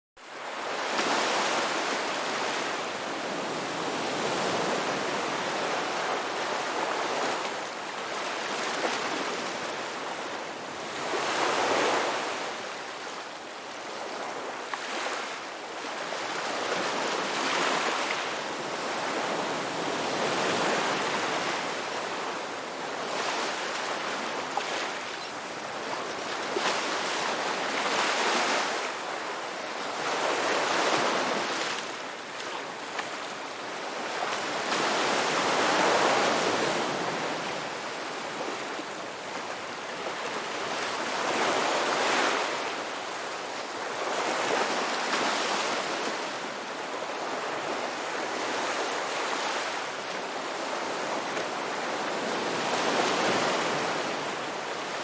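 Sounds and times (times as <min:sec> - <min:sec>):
sea waves breaking on shore: 0:00.2 - 0:55.0.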